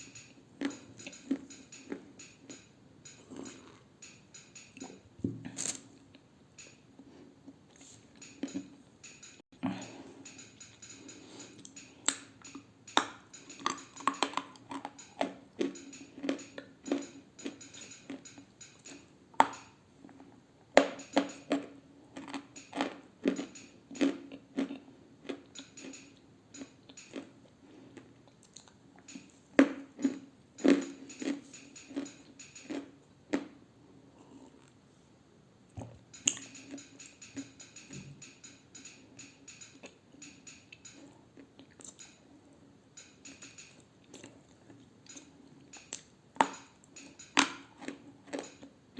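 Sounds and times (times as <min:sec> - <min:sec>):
crunching and chewing clay: 0:21.0 - 0:28.8.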